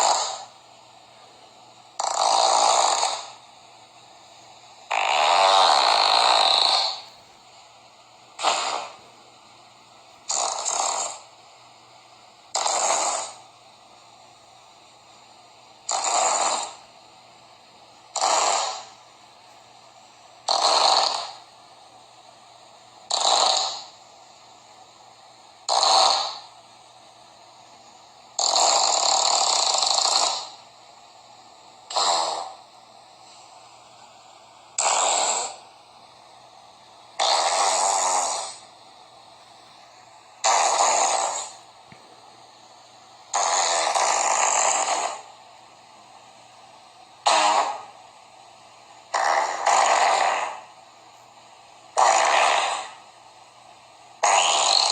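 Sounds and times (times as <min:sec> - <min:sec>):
breathy hissing farts: 0:00.0 - 0:00.6, 0:02.0 - 0:03.4, 0:04.9 - 0:07.1, 0:08.4 - 0:09.0, 0:10.3 - 0:11.4, 0:12.5 - 0:13.5, 0:15.9 - 0:16.8, 0:18.1 - 0:19.0, 0:20.4 - 0:21.5, 0:23.1 - 0:24.0, 0:25.7 - 0:26.6, 0:28.4 - 0:30.6, 0:31.9 - 0:32.6, 0:34.8 - 0:35.6, 0:37.2 - 0:38.7, 0:40.4 - 0:41.7, 0:43.3 - 0:45.4, 0:47.2 - 0:48.0, 0:49.1 - 0:50.8, 0:51.9 - 0:53.1, 0:54.2 - 0:54.9.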